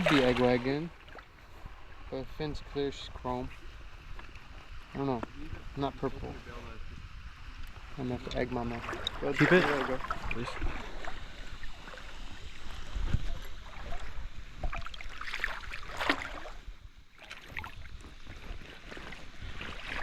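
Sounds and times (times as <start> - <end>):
creek water rushing: 0.0 - 6.0, 7.9 - 16.6
wind rumble on microphone: 0.0 - 20.0.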